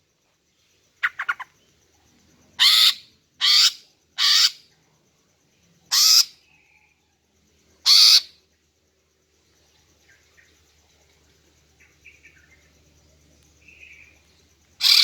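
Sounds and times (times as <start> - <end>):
faint bird chirps: 0.0 - 15.0
bird harsh rasping calls: 2.6 - 4.6, 5.9 - 6.3, 7.9 - 8.3, 14.8 - 15.0.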